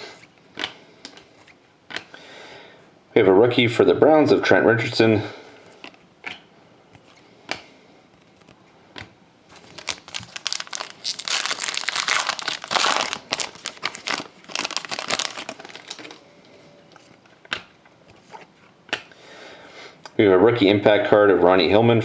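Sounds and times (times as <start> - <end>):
card pack wrapper crinkling: 9.5 - 16.2.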